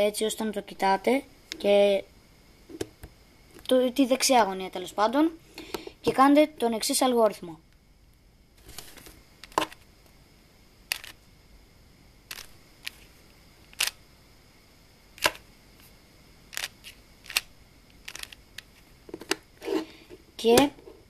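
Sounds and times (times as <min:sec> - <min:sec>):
puzzle cube layers clicking: 0:10.9 - 0:11.2, 0:16.5 - 0:18.4.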